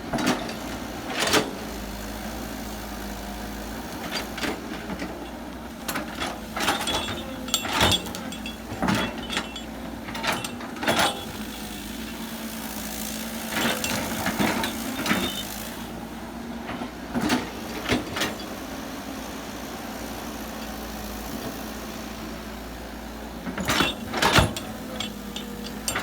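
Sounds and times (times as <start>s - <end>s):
diesel engine running: 0.4s - 26.0s
sharp metal clanks and knocks: 4.4s - 11.7s, 13.5s - 15.5s, 23.5s - 26.0s.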